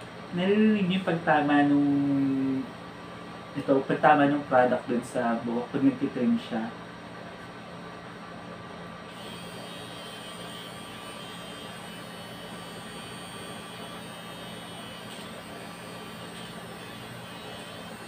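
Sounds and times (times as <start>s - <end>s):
nose hair trimmer motor whine: 9.1s - 18.0s.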